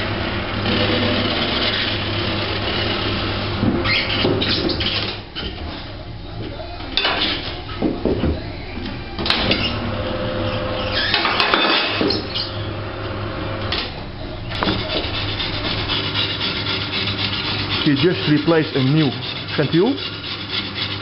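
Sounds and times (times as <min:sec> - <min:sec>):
hand tools scraping and knocking: 0:14.5 - 0:21.0.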